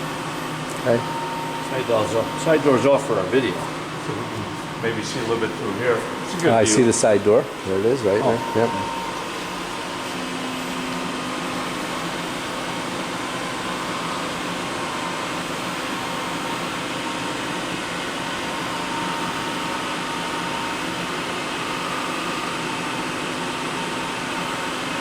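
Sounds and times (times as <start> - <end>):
machine fans whirring: 0.0 - 25.0
faint steady tone: 0.7 - 5.5, 8.0 - 11.9.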